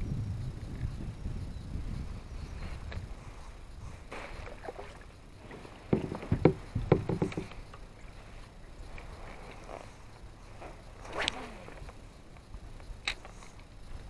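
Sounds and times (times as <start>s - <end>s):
wind: 0.0s - 14.0s
knocks against a kayak: 5.8s - 7.6s.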